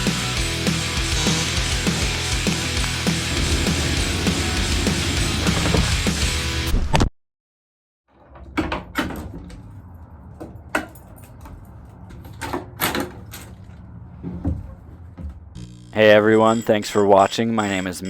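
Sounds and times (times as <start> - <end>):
heavy metal music: 0.0 - 6.7.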